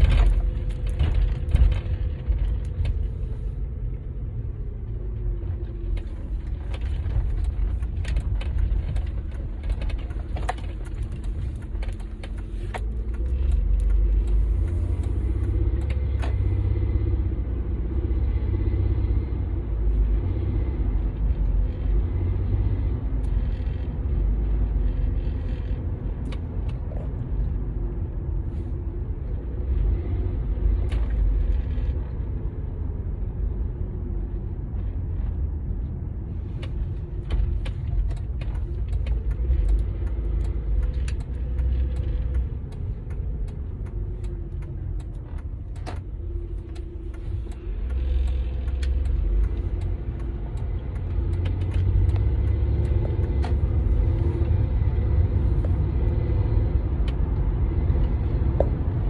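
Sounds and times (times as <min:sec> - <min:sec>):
car engine and road rumble: 0:00.0 - 0:59.0.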